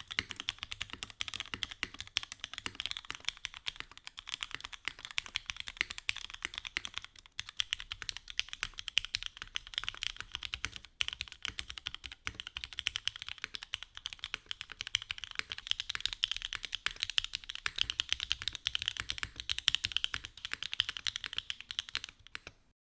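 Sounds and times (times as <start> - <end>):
fast mechanical keyboard typing: 0.0 - 22.6.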